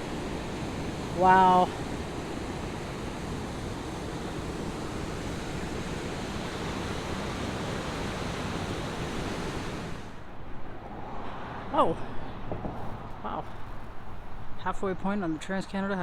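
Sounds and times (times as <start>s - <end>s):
wind gusting across microphone: 0.0s - 15.0s.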